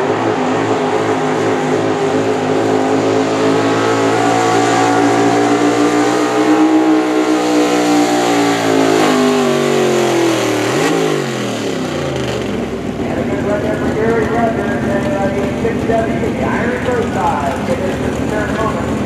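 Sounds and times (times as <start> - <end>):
tractor engine running under load: 7.9 - 19.0.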